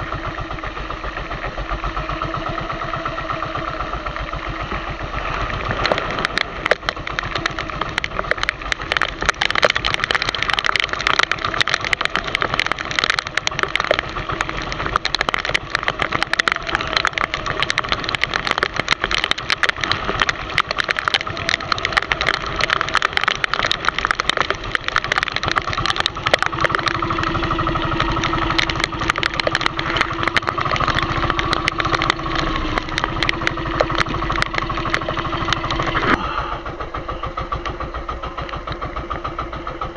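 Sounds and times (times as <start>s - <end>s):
boat engine running: 0.0s - 39.9s
sharp clicks and ticks: 0.0s - 39.9s.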